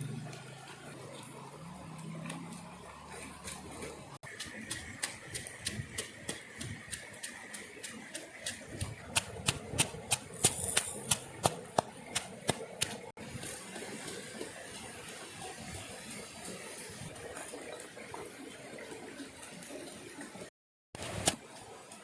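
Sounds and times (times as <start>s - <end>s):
rapid chopping strokes: 3.4s - 13.1s, 21.0s - 21.4s.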